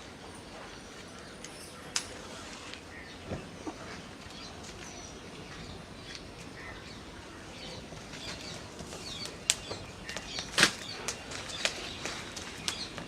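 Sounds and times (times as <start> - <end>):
birds chirping: 0.0 - 13.0
steady background noise: 0.0 - 13.0.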